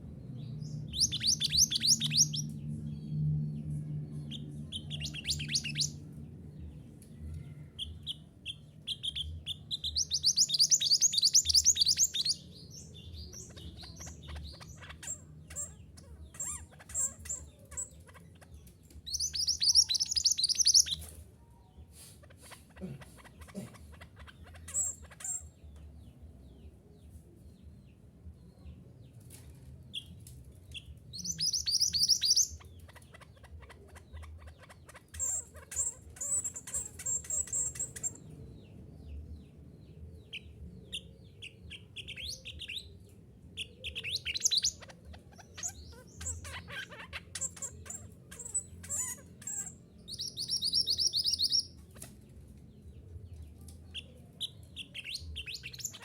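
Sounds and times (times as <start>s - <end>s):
bird trilling chirps: 0.6s - 2.5s, 4.3s - 6.0s, 7.8s - 21.1s, 22.4s - 25.6s, 30.8s - 38.3s, 43.6s - 52.1s, 54.0s - 56.0s.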